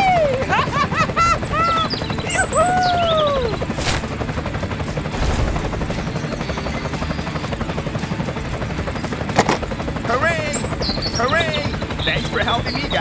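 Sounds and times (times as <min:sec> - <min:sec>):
toy motor rattling: 0:06.4 - 0:13.0.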